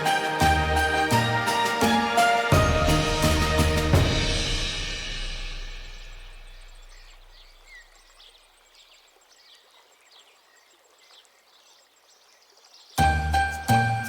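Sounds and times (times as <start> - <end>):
background music: 0.0 - 7.3, 13.0 - 14.0
faint bird chirps: 6.5 - 13.1.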